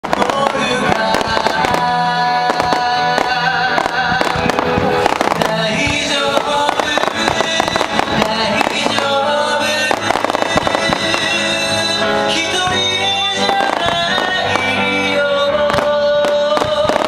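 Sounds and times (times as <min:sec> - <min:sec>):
fireworks bangs and crackles: 0:00.0 - 0:17.0
music playing: 0:00.0 - 0:17.0.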